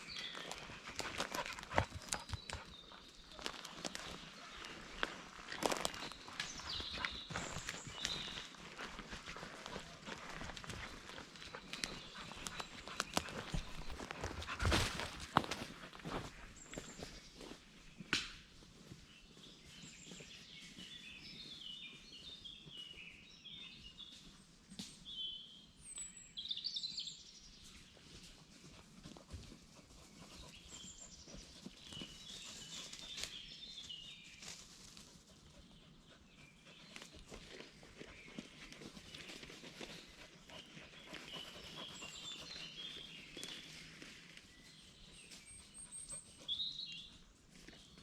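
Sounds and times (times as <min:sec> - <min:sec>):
birds chirping: 0:00.0 - 0:18.1, 0:29.1 - 0:48.0.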